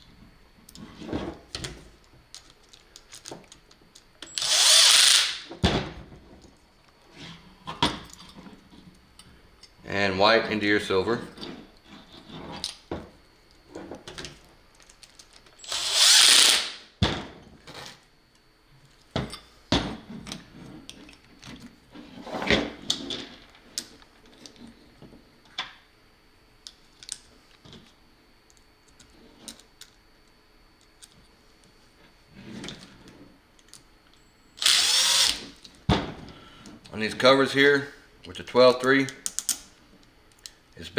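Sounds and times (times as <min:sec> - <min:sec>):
clicks and knocks of parts handled: 0:01.5 - 0:04.3, 0:13.5 - 0:15.6, 0:26.6 - 0:31.7, 0:38.2 - 0:40.7
impact drill driving screw: 0:04.3 - 0:05.5, 0:15.6 - 0:16.8, 0:34.6 - 0:35.5.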